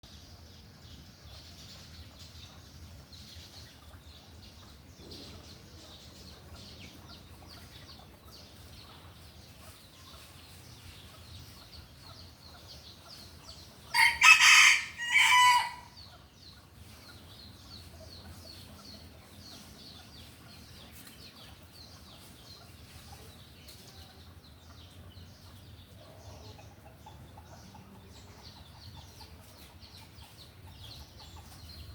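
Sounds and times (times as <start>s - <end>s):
rooster crowing: 13.9s - 16.0s.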